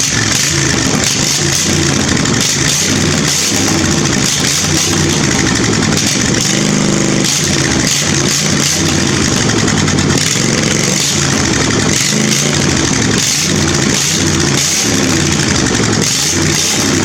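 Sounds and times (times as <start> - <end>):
mower engine with open exhaust: 0.0 - 17.0.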